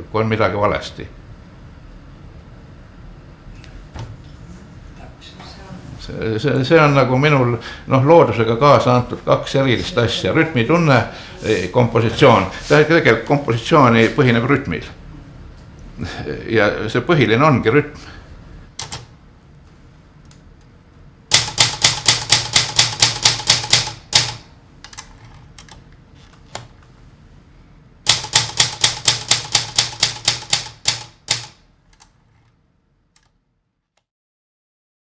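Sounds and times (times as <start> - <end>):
typewriter typing: 21.3 - 25.8, 28.1 - 31.6.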